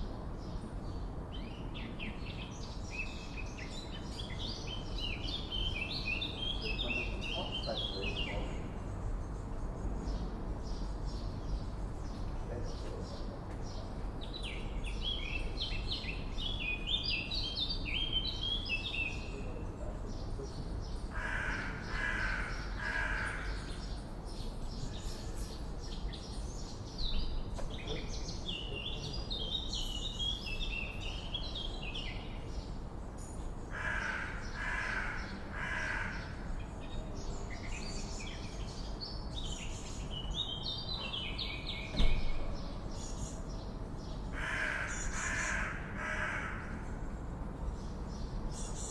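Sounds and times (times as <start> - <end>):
crow cawing: 21.2 - 23.7, 33.7 - 36.5, 44.4 - 46.8
brief knock: 41.9 - 42.5.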